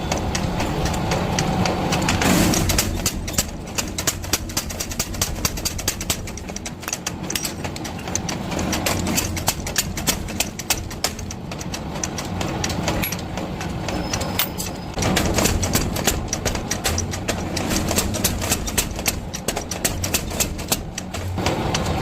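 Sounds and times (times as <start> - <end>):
power hammer metal knocks: 0.0 - 22.0.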